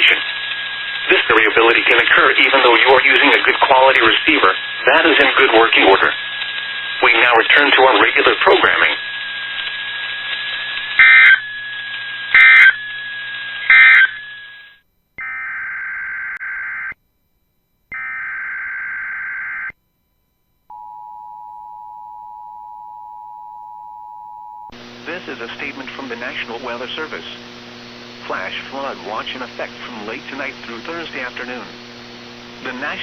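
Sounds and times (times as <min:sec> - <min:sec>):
radio hiss: 0:00.0 - 0:14.2, 0:24.8 - 0:33.0
steady radio whistle: 0:00.0 - 0:14.5, 0:15.2 - 0:17.0, 0:17.9 - 0:19.7
data bursts: 0:11.0 - 0:11.6, 0:12.4 - 0:12.9, 0:13.6 - 0:14.5, 0:17.9 - 0:19.7.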